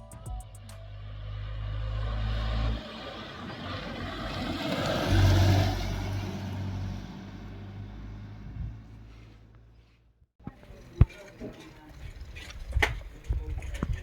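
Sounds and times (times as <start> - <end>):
vehicle passing by: 0.7 - 9.8.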